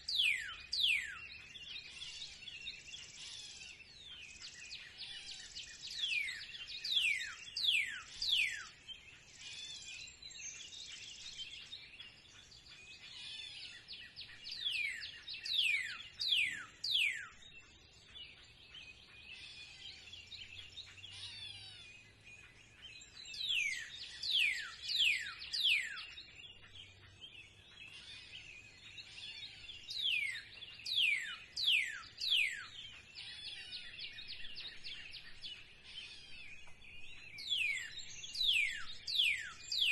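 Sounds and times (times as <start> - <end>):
birds chirping: 0.0 - 39.9.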